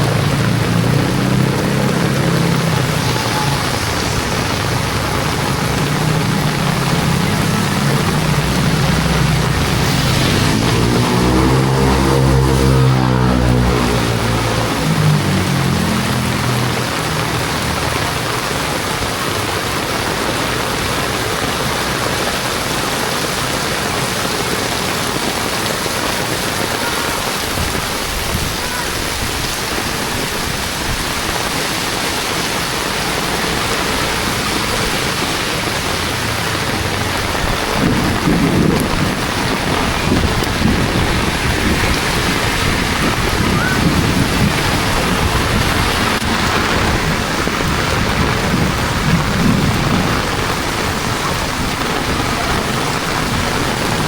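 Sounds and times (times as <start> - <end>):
low rumble: 0.0 - 17.2
heavy rain on street: 0.0 - 54.0.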